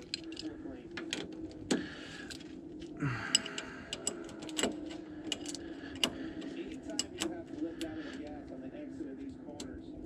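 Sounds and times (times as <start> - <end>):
steady background hum: 0.0 - 10.0
wrench clicking and clinking: 3.3 - 6.2.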